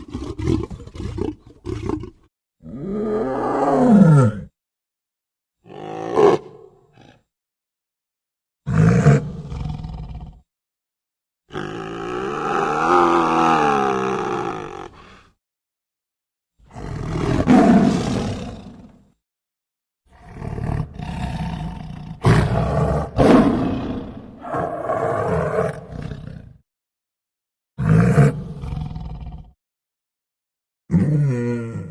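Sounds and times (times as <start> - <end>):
tiger roaring and growling: 0.0 - 4.6, 8.7 - 10.4, 11.5 - 15.2, 16.7 - 19.1, 20.1 - 26.6, 27.8 - 29.5, 30.9 - 31.9.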